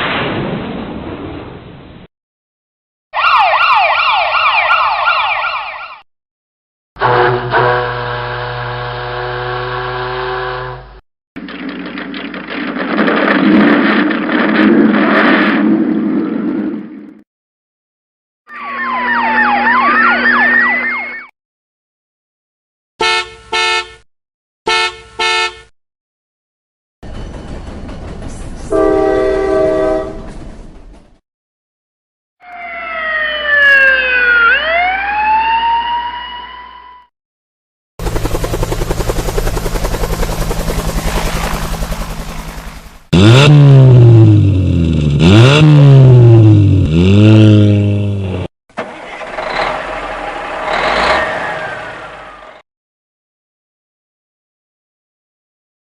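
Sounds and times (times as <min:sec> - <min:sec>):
emergency siren yelping: 0:03.2 - 0:06.1, 0:18.5 - 0:21.3, 0:32.4 - 0:37.1
held horn-like tone: 0:07.0 - 0:11.0, 0:23.0 - 0:24.0, 0:24.7 - 0:25.7, 0:28.7 - 0:30.3
low hum: 0:38.0 - 0:43.1
vehicle rumbling: 0:38.0 - 0:52.6.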